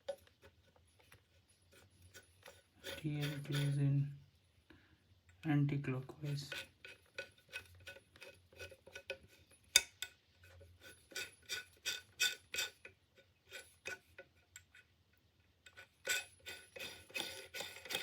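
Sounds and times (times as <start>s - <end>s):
light metallic clicks and taps: 8.9s - 10.2s.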